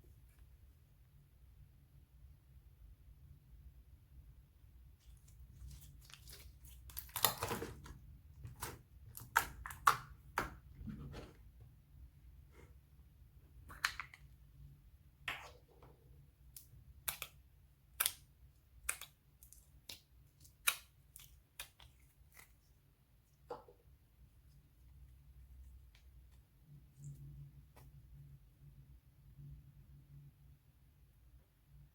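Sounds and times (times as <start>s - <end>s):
slime squelch: 4.9s - 11.3s, 13.5s - 28.3s
slime clicking and popping: 16.5s - 21.9s.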